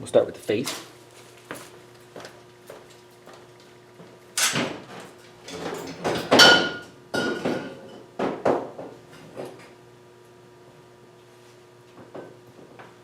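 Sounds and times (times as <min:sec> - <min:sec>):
metal tools clattering on workbench: 0:05.5 - 0:07.9.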